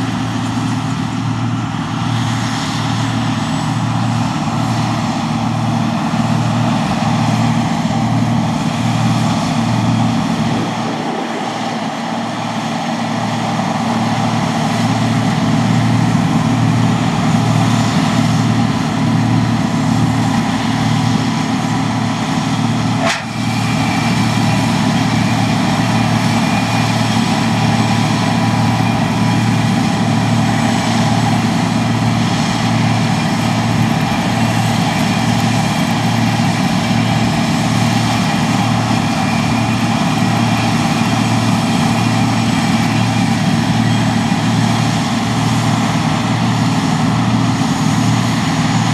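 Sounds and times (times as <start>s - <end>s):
combine harvester engine hum: 0.0s - 48.9s
machinery clatter: 22.8s - 28.0s
sharp click: 23.0s - 23.4s.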